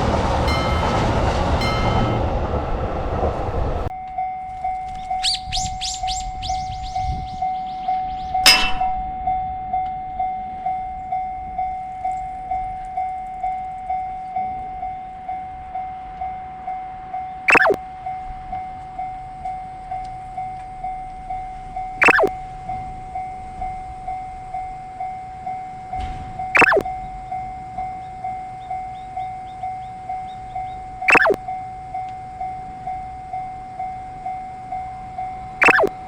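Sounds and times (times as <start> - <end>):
level-crossing alarm bell ringing: 0.2 - 2.5.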